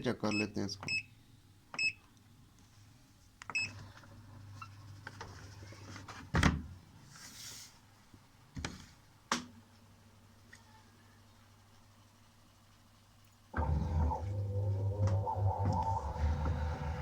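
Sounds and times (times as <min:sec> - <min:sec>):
washing machine humming: 0:13.5 - 0:17.0.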